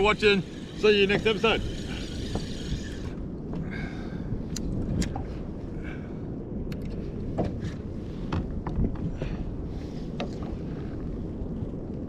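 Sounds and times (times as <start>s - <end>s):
water lapping: 0.0s - 3.2s
wind rumbling on microphone: 0.0s - 12.0s.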